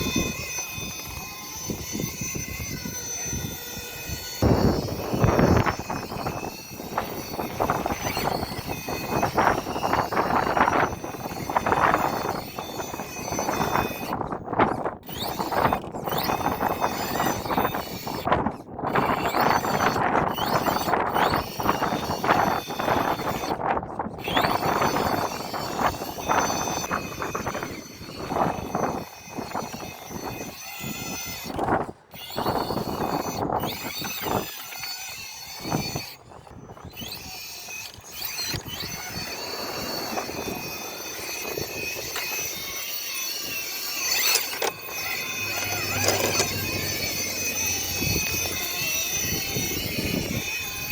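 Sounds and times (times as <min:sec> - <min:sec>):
rc car motor whining: 0:00.0 - 0:50.9.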